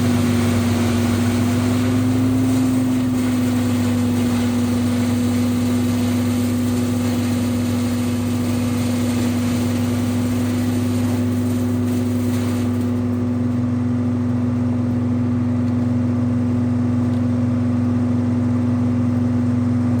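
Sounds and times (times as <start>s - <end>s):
hiss: 0.0s - 13.2s
wood chipper engine droning: 0.0s - 20.0s.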